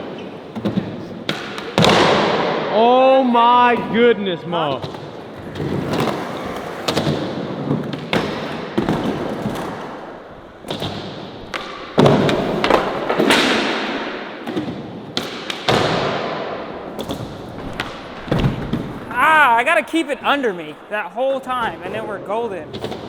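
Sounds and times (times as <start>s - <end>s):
skateboard impacts: 0.0s - 2.7s, 4.8s - 19.2s, 22.7s - 23.0s
skateboards rolling: 4.8s - 15.8s, 16.5s - 19.3s.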